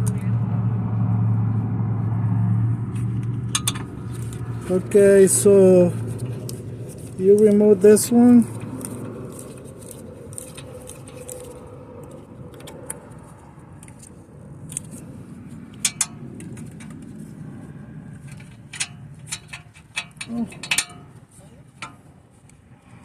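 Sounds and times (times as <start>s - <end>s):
hand tools clinking on metal: 18.7s - 21.2s.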